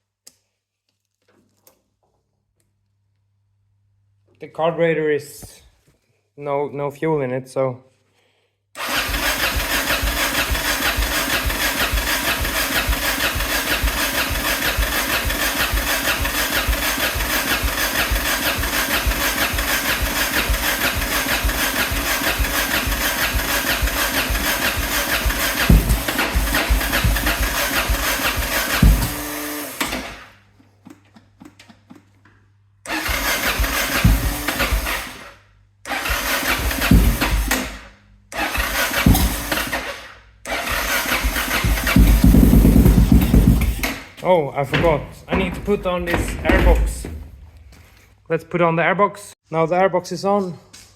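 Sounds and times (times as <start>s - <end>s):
motorcycle engine cranking: 8.8s - 30.3s, 32.9s - 35.3s, 35.9s - 47.1s.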